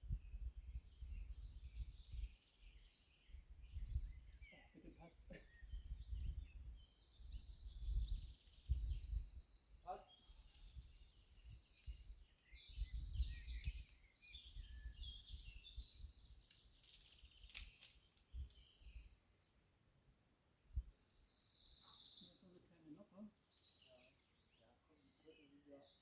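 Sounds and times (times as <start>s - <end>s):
wind rumbling on microphone: 0.0s - 4.6s, 5.3s - 9.6s, 10.5s - 16.4s
songbirds chirping and trilling: 0.0s - 26.0s.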